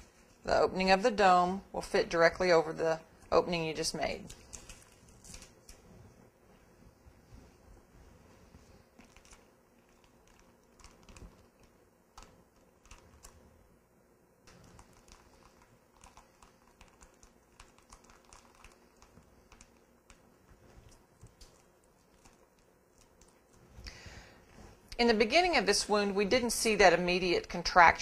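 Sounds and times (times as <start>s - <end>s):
small clicks and crinkles of dressing: 4.0s - 5.9s, 8.5s - 13.4s, 14.5s - 23.9s.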